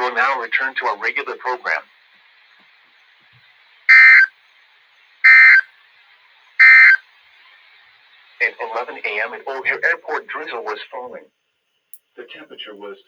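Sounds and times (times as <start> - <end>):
faint radio hiss: 0.0 - 13.0
digital data screech: 3.9 - 4.3, 5.3 - 5.6, 6.6 - 7.0.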